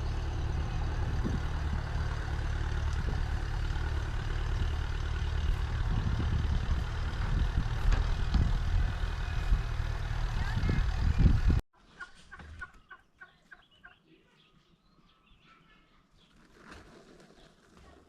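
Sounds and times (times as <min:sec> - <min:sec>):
engine humming: 0:00.0 - 0:11.6.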